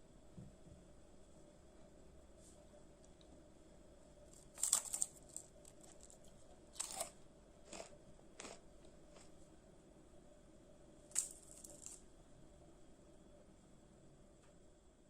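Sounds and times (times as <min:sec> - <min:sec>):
rice cakes crunching: 0:04.3 - 0:09.4, 0:11.1 - 0:12.0.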